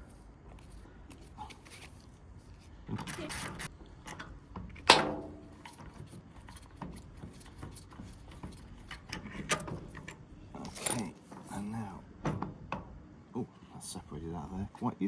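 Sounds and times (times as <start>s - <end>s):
metal parts clicking and knocking: 3.0s - 11.4s.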